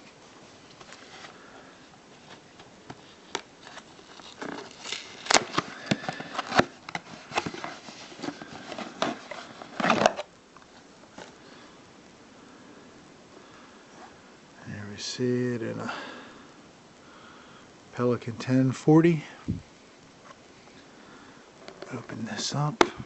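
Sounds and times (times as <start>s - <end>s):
packaging clicks and rustling: 2.2s - 11.4s.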